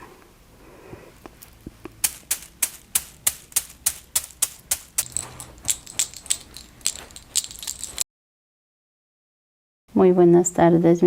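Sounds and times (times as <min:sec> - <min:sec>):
high metallic jingle: 0:02.0 - 0:08.0.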